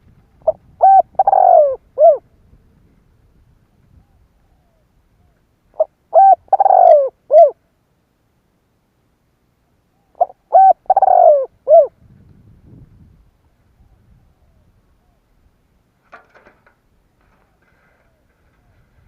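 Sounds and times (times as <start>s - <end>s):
dove cooing: 0.1s - 2.4s, 3.9s - 7.6s, 9.9s - 12.0s, 17.3s - 19.0s.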